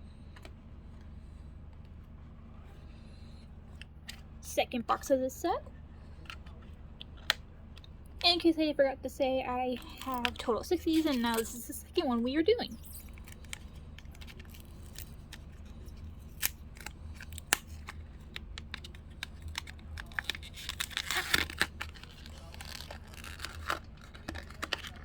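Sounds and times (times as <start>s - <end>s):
steady low hum: 0.0s - 25.0s
cardboard crinkling and clicking: 9.7s - 12.1s, 12.8s - 25.0s.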